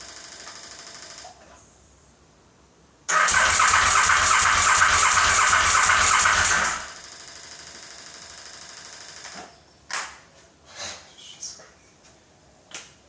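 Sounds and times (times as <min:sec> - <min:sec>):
engine cranking on starter: 0:03.1 - 0:07.0
steady hum: 0:03.3 - 0:07.0.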